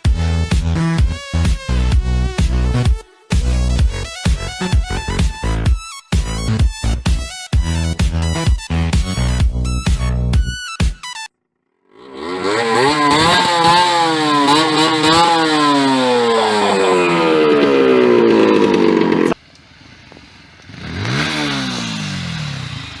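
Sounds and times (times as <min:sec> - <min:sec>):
motorcycle engine revving: 0:11.8 - 0:19.4, 0:20.5 - 0:23.0.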